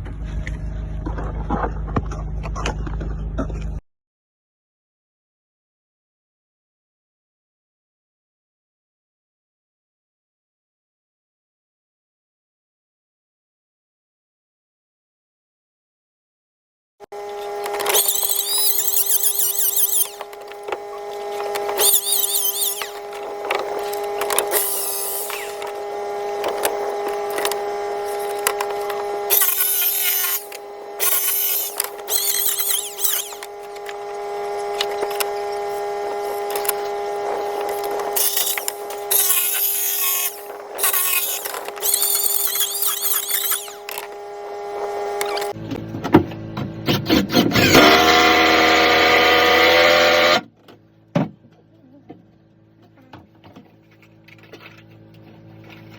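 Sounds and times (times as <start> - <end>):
harsh cutting noise: 17.0 - 50.6
power tool whining: 17.0 - 50.6.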